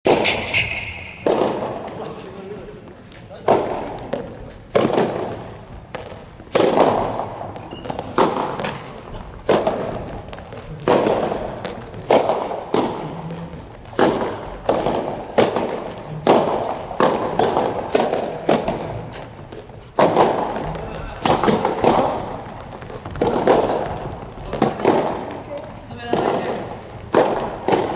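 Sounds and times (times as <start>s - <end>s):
tennis ball hit by rackets: 0.1s - 2.0s, 3.4s - 25.4s, 26.1s - 27.9s
ball bouncing on court: 0.1s - 27.9s.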